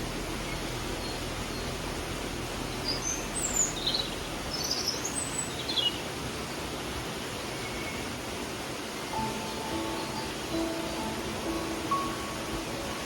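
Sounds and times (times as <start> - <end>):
stream flowing: 0.0 - 13.0
bird chirps and trills: 2.7 - 6.1.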